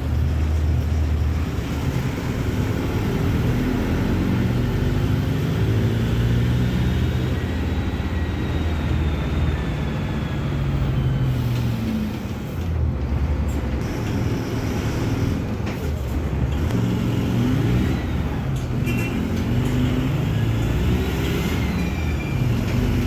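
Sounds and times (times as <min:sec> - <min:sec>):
bus diesel engine running: 0:00.0 - 0:23.0.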